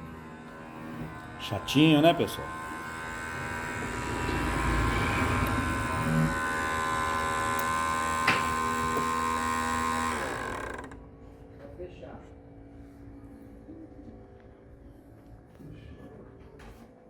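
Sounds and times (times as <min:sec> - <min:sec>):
pump motor electric hum: 0:00.0 - 0:11.6.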